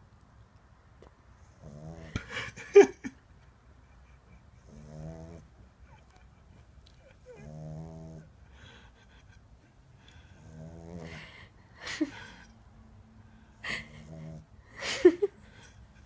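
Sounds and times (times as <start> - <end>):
puppy snoring: 1.4 - 2.3, 4.6 - 5.5, 7.0 - 8.9, 10.2 - 11.4, 13.7 - 14.5.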